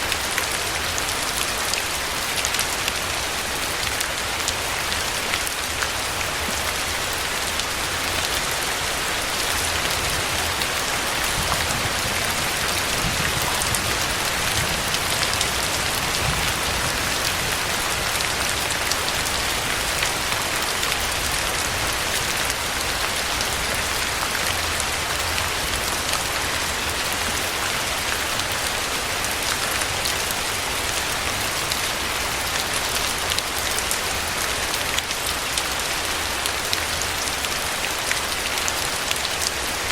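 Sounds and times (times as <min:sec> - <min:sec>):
steady rain falling: 0:00.0 - 0:39.9
raindrops ticking: 0:07.5 - 0:28.6.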